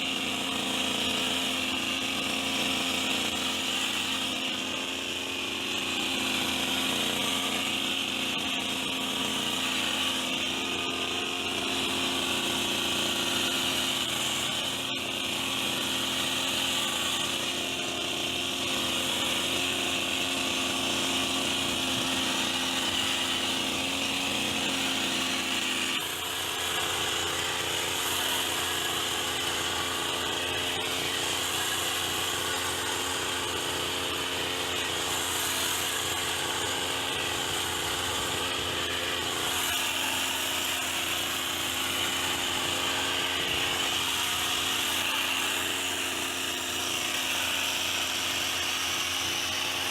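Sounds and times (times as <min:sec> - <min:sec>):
hedge trimmer engine running: 0:00.0 - 0:49.9.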